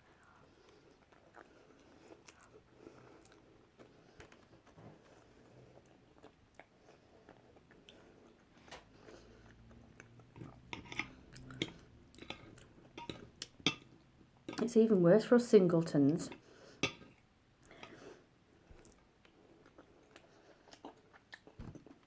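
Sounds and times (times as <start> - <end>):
person chewing food: 0.0 - 14.6, 16.3 - 22.0.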